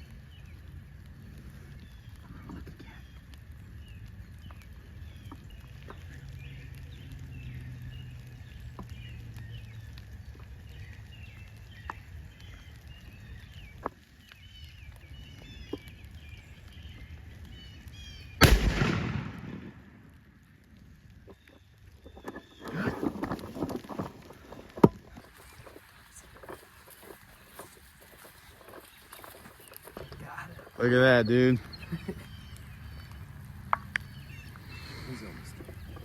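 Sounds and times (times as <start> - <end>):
small birds chirping: 0.0 - 18.9, 20.5 - 36.0
shotgun blast with echo: 18.4 - 19.9.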